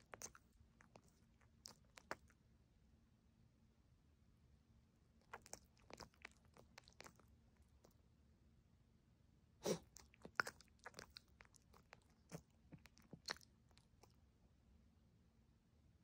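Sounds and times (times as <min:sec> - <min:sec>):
puppy chewing: 0:00.0 - 0:02.4, 0:05.2 - 0:08.0, 0:09.6 - 0:14.2.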